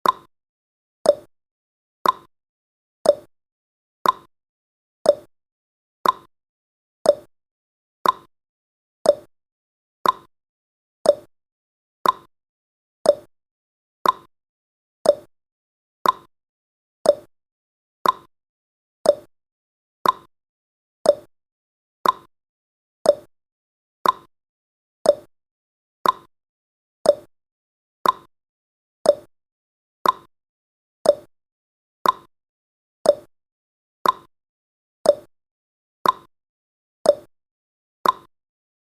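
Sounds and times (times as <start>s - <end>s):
clock ticking: 2.0s - 2.3s, 4.0s - 4.3s, 6.0s - 6.3s, 8.0s - 8.3s, 10.0s - 10.3s, 12.0s - 12.3s, 14.0s - 14.3s, 15.1s - 15.3s, 16.0s - 16.3s, 17.1s - 17.3s, 18.0s - 18.3s, 19.1s - 19.3s, 20.0s - 20.3s, 21.1s - 21.3s, 22.0s - 22.3s, 24.0s - 24.3s, 26.0s - 26.3s, 28.0s - 28.3s, 29.1s - 29.3s, 30.0s - 30.3s, 31.1s - 31.3s, 32.0s - 32.3s, 33.1s - 33.3s, 34.0s - 34.3s, 35.1s - 35.3s, 36.0s - 36.3s, 38.0s - 38.3s.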